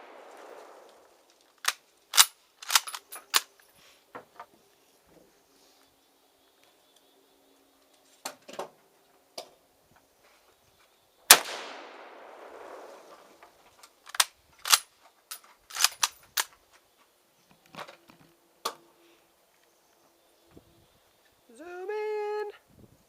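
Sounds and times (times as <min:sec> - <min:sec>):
quieter sharp gunshot cracks: 0:00.0 - 0:01.2, 0:11.3 - 0:13.4
loud gunshot with echo: 0:11.3 - 0:13.0.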